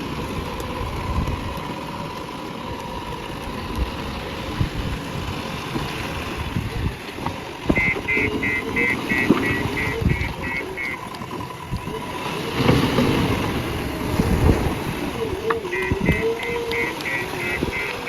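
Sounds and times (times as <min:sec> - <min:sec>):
diesel engine running: 0:00.0 - 0:18.0
wavering whine: 0:00.0 - 0:18.0
reversing alarm beeping: 0:07.7 - 0:11.1, 0:15.6 - 0:18.0.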